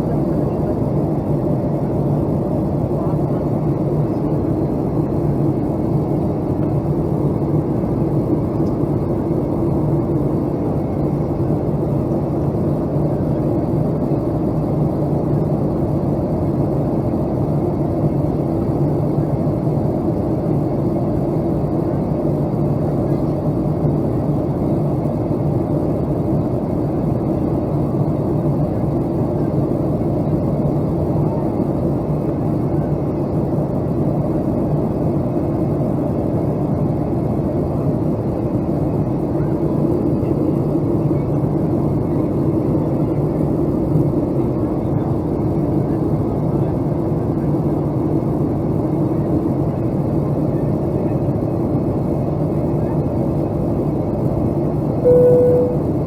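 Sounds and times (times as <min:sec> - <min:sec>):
jet engine drone: 0:54.7 - 0:56.0.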